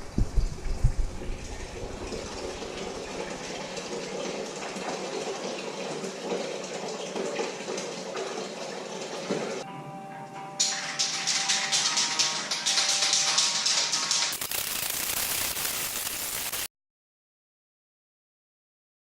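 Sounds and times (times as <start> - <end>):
scratchy sanding hiss: 14.3 - 16.7.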